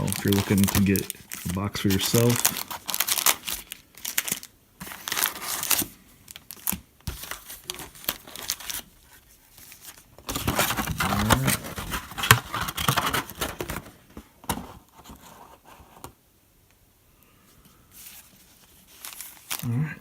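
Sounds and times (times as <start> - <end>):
plastic wrapping crinkling: 0.0 - 13.8, 18.0 - 19.7.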